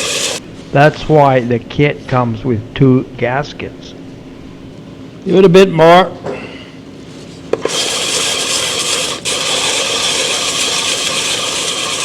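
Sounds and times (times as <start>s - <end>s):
metal scraping on sandpaper: 0.0s - 0.4s, 7.6s - 12.0s.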